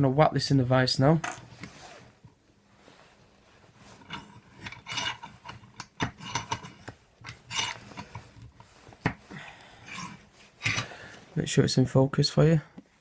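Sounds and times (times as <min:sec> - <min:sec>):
metal clicks and knocks: 0:04.0 - 0:08.4.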